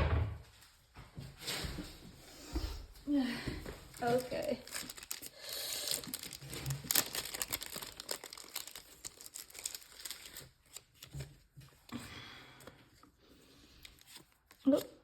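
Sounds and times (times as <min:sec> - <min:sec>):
plastic crinkling and rustling: 0:03.6 - 0:12.0, 0:13.8 - 0:15.0.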